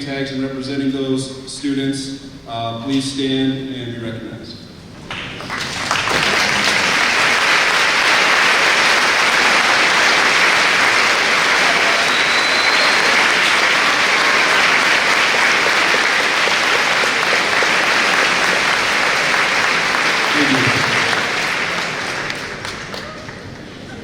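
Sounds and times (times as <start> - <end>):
audience applause: 5.0 - 23.7.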